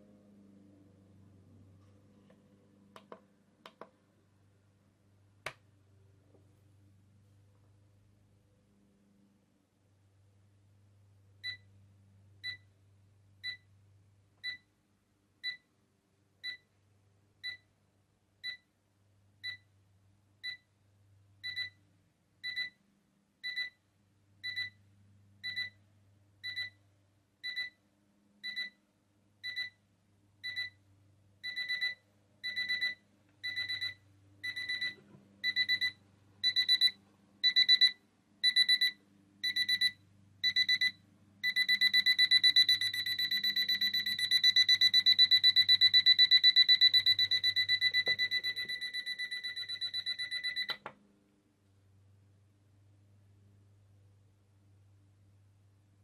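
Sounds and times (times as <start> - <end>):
alarm clock beeping: 24.4 - 24.7, 25.4 - 25.7, 30.4 - 30.7, 31.4 - 50.8.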